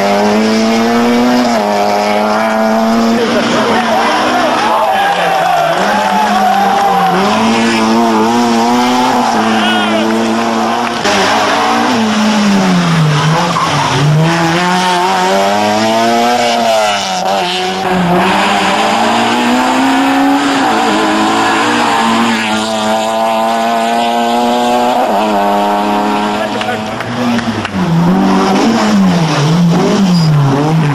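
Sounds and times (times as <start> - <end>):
car engine at high revs: 0.0 - 30.9.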